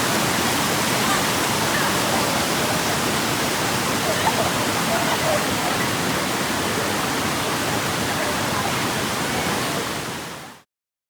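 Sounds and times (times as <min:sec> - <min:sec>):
waterfall rushing: 0:00.0 - 0:10.6.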